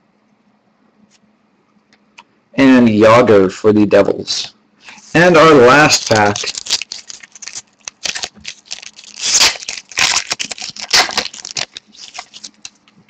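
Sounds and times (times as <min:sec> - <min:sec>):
card pack wrapper tearing and crinkling: 0:05.7 - 0:13.0.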